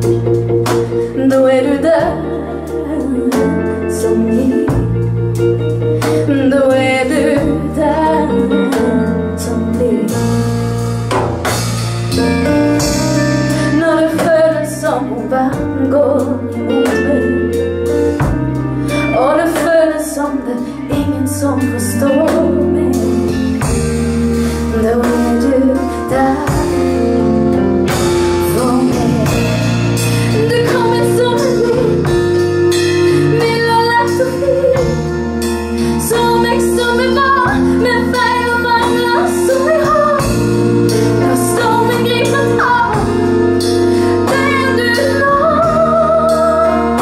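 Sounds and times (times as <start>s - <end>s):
bending melodic lead line: 0.0s - 47.0s
held bass notes: 0.0s - 47.0s
live pop band playing: 0.0s - 47.0s
steady drum beat: 10.1s - 14.9s, 16.9s - 18.8s, 22.4s - 47.0s.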